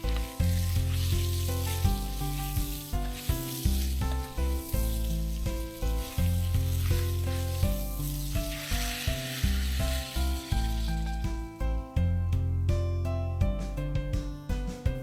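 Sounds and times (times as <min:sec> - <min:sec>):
food sizzling in a pan: 0:00.0 - 0:11.8
background music with bass: 0:00.0 - 0:15.0.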